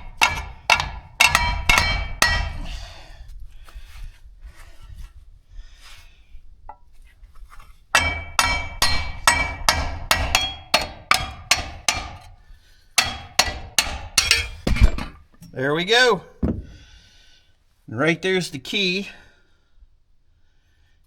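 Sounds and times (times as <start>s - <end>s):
hammer tapping on metal pulley: 0.0s - 2.8s, 8.0s - 12.3s, 13.0s - 14.8s.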